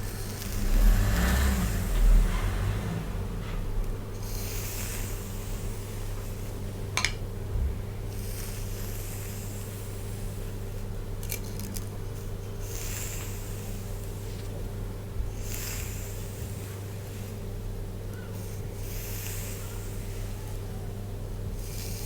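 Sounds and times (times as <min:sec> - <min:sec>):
low hum: 0:00.0 - 0:04.2.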